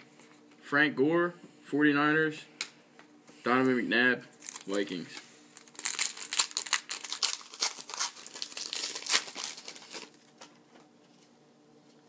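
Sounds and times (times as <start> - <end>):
card pack wrapper crinkling and tearing: 4.4 - 10.6.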